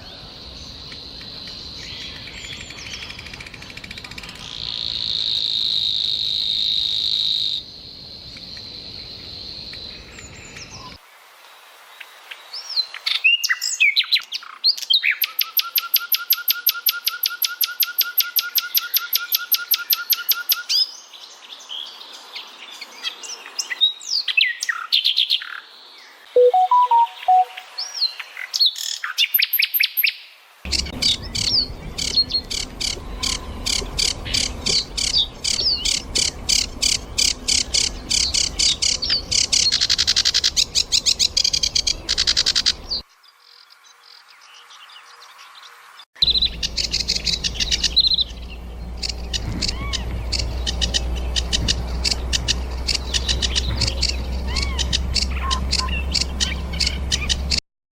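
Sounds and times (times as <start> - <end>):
birds chirping and calling: 0.8 - 5.3, 30.7 - 43.0, 46.2 - 57.6.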